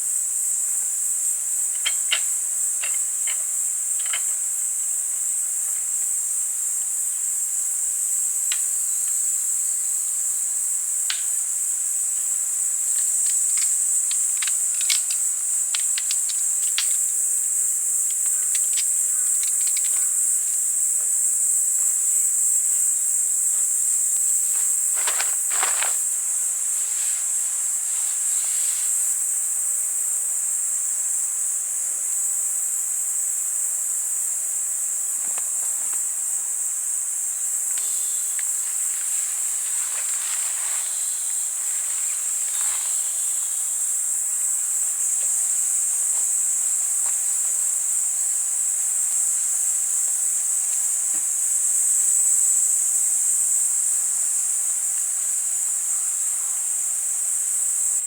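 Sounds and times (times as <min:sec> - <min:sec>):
high-pitched insect chorus: 0:00.0 - 0:58.0
faint rustles: 0:23.6 - 0:29.2, 0:38.6 - 0:43.3.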